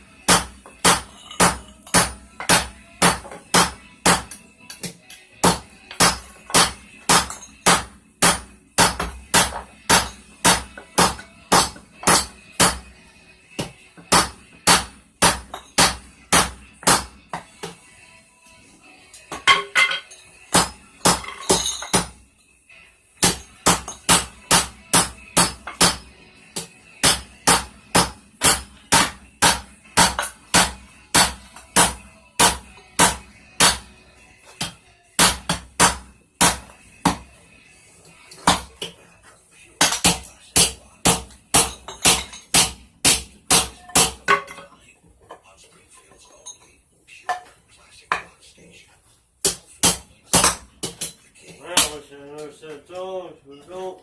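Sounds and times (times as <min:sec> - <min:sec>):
hammer striking metal on anvil: 0:00.2 - 0:12.9, 0:13.6 - 0:17.8, 0:19.3 - 0:22.2, 0:23.2 - 0:33.9, 0:39.8 - 0:44.6.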